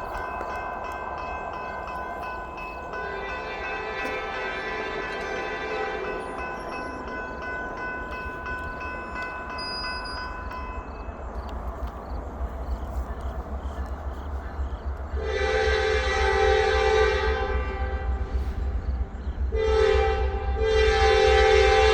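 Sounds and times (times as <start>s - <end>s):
locomotive horn blasts: 3.2s - 6.2s, 15.2s - 18.6s, 19.5s - 21.9s.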